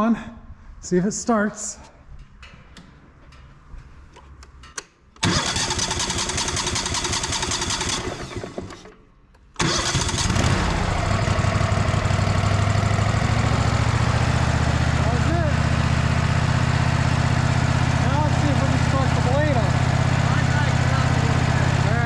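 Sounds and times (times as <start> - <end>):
gasoline engine starting and running: 5.2 - 22.0.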